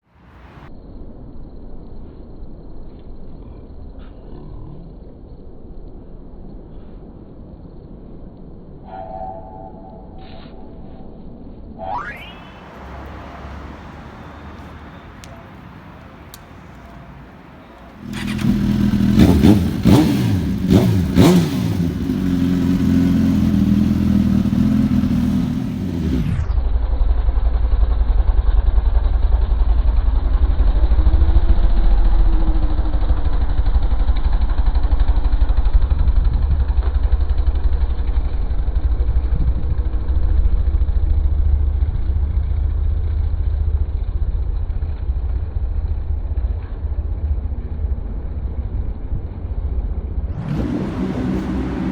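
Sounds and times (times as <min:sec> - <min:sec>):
engine low rumble: 0:00.0 - 0:51.9
motorcycle engine revving: 0:17.8 - 0:47.7, 0:49.5 - 0:51.9.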